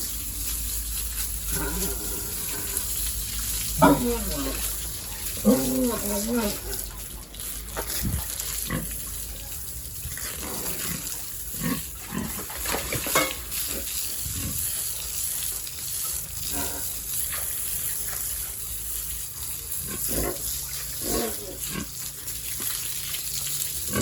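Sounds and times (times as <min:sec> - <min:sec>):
running water hiss: 0:00.0 - 0:24.0
pigs grunting: 0:01.3 - 0:09.3, 0:10.1 - 0:14.9, 0:16.4 - 0:17.6, 0:19.5 - 0:22.2, 0:23.8 - 0:24.0.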